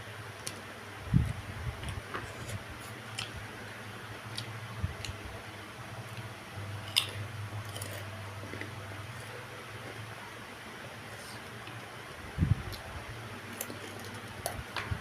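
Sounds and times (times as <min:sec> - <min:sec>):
low steady hum: 0:00.0 - 0:15.0
person chewing food: 0:06.1 - 0:10.0.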